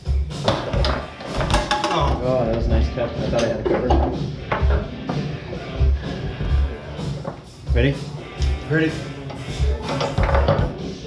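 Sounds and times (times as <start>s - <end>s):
background music with bass beat: 0.0s - 11.0s
foosball ball and rods clacking: 0.4s - 2.2s, 3.4s - 5.3s, 7.0s - 7.5s, 9.2s - 10.8s.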